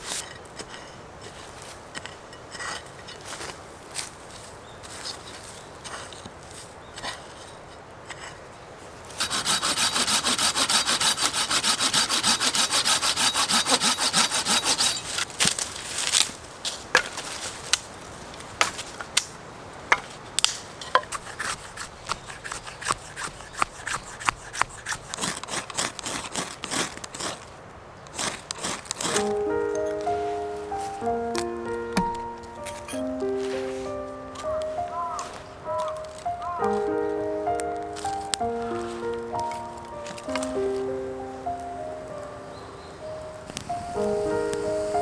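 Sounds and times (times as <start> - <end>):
hand saw cutting wood: 9.2 - 15.6, 20.8 - 27.5, 28.1 - 30.1, 32.0 - 33.2
wood cracking and knocking: 31.3 - 33.2.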